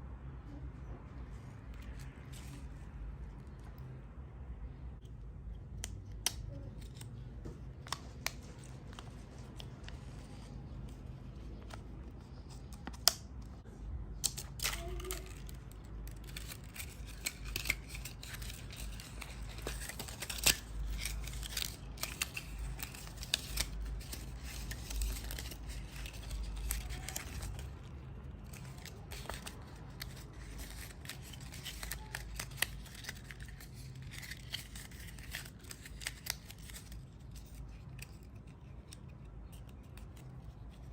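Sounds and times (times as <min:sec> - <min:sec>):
packaging crinkling and tearing: 0:14.1 - 0:40.8.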